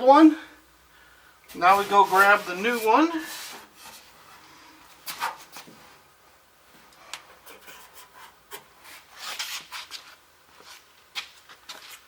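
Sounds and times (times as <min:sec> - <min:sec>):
hands rubbing and scraping parts: 0:01.5 - 0:06.0, 0:06.9 - 0:12.0.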